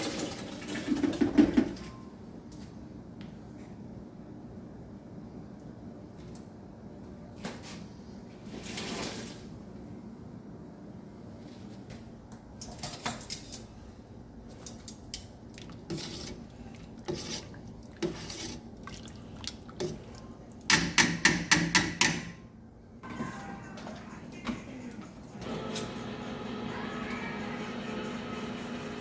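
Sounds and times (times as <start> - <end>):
utensils and dishes clinking: 12.6 - 13.8.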